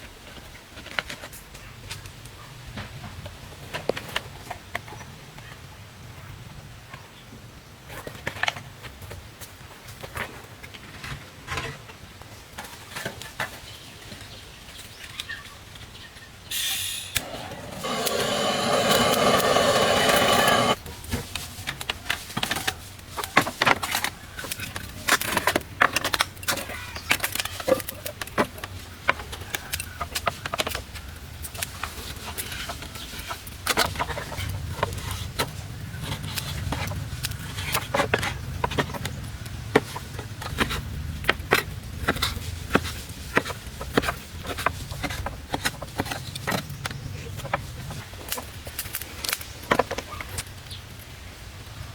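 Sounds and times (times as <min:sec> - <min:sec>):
clicks and scrapes of handwork: 0:17.2 - 0:20.8.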